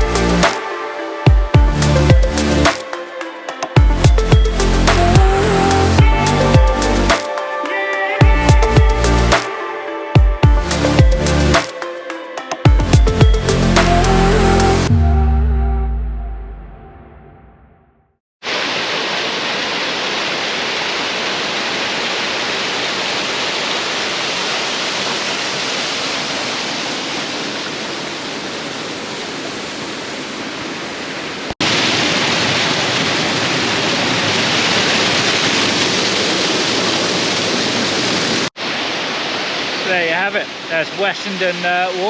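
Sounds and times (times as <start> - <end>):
waterfall roaring: 18.4 - 42.0.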